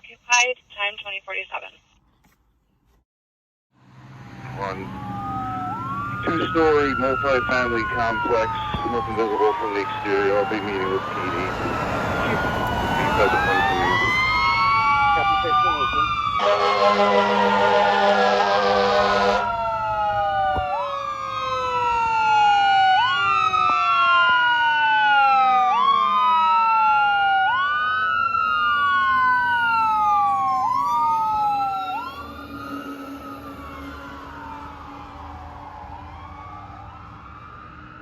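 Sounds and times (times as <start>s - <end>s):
fire engine siren: 3.8s - 38.0s
truck air horn blast: 16.4s - 19.5s.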